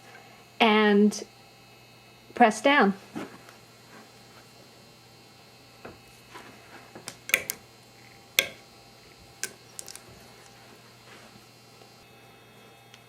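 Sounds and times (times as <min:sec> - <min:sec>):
plastic snaps cracking in press: 0:07.0 - 0:07.6, 0:09.4 - 0:10.0.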